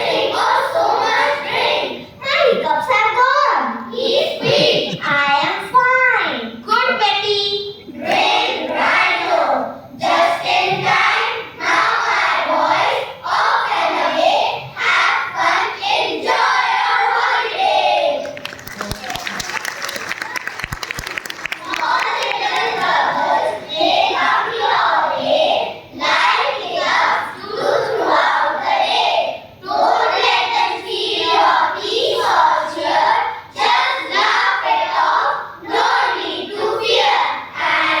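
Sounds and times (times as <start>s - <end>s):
children chanting in unison: 0.0s - 2.6s, 7.9s - 18.4s, 21.6s - 38.0s.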